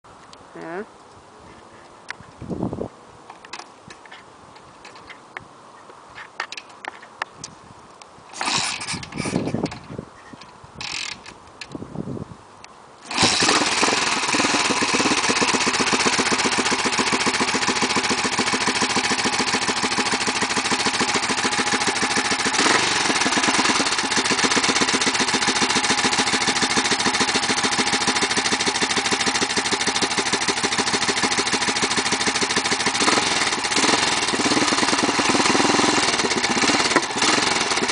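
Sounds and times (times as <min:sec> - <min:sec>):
motorcycle engine running: 0:13.1 - 0:37.9.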